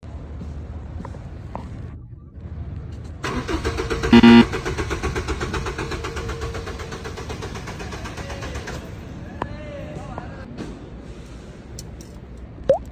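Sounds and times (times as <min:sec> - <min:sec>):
car engine starting and running: 0:03.2 - 0:06.3
brief loud pitched tone: 0:04.1 - 0:04.4.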